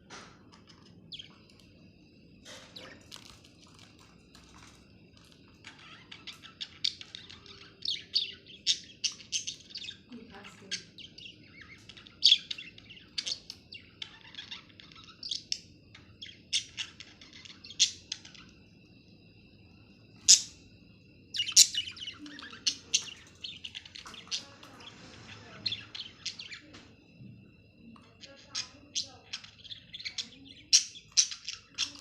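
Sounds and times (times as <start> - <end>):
budgerigars chirping: 5.5 - 18.6, 20.2 - 26.8, 28.4 - 32.0.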